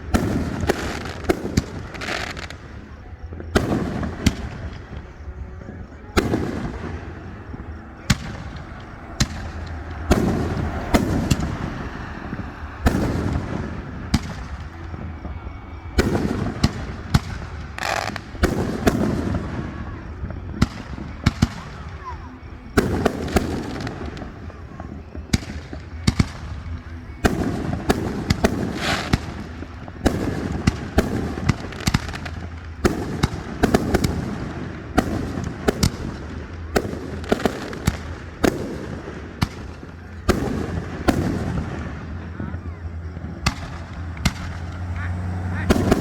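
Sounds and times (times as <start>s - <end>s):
firework shells bursting: 0.0s - 46.0s
low rumbling echo: 2.6s - 46.0s.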